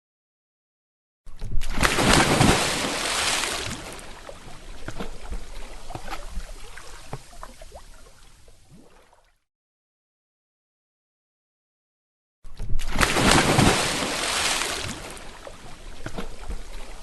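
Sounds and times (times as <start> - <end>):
water spray rushing: 1.8 - 4.2, 13.0 - 15.1
water drips and plops: 1.8 - 9.4.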